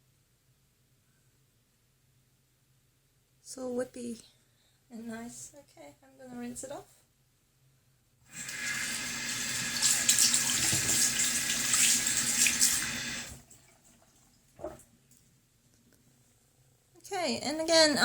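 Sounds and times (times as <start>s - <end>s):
tap water running over hands: 8.3s - 14.8s.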